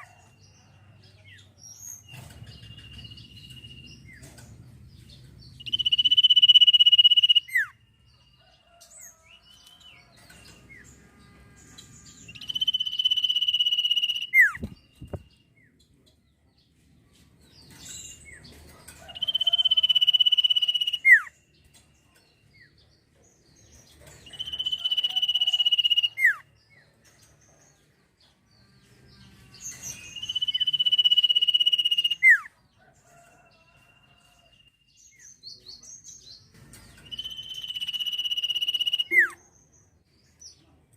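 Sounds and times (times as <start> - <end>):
bird high whistle: 5.6 - 7.7, 12.4 - 14.7, 19.2 - 21.3, 24.4 - 26.4, 30.2 - 32.4, 37.1 - 39.4.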